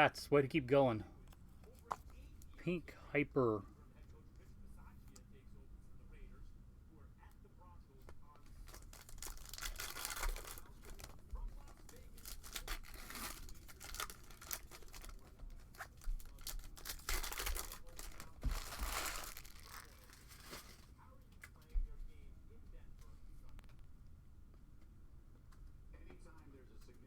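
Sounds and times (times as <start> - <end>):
wrappers tearing and crinkling: 8.6 - 20.9.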